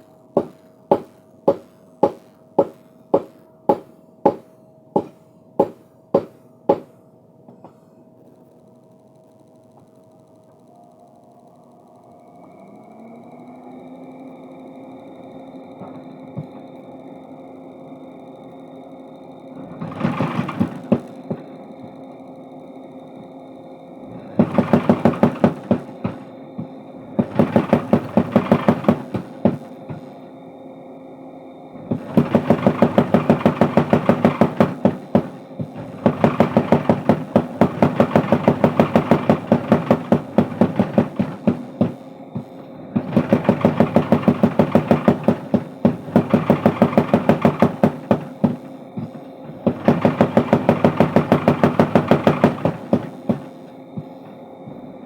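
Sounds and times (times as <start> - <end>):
machine motor humming: 0.0 - 6.9, 14.7 - 55.0
power hammer blows: 0.0 - 7.9, 19.6 - 22.0, 24.2 - 30.3, 31.8 - 55.0.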